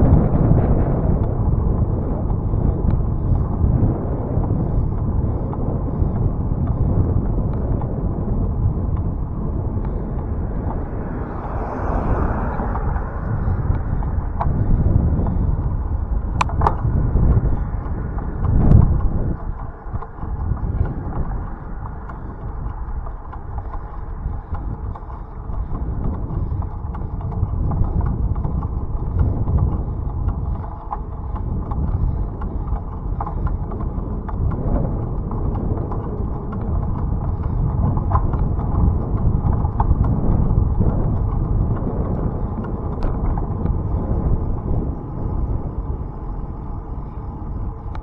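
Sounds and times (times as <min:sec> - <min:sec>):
bicycle rolling rumble: 0:00.0 - 0:48.0
wind on microphone: 0:00.0 - 0:48.0
small clicks and rattles: 0:12.9 - 0:48.0.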